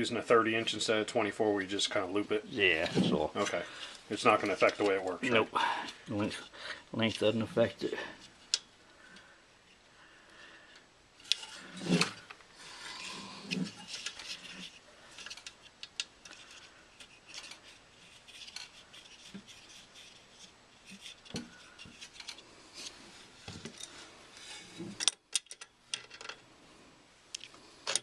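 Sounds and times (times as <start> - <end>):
metal tools clicking and tapping: 25.0 - 26.4.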